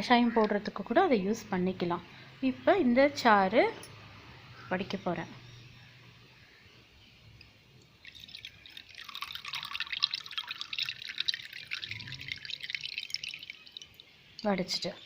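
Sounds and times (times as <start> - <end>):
juice dripping through strainer: 7.8 - 14.7.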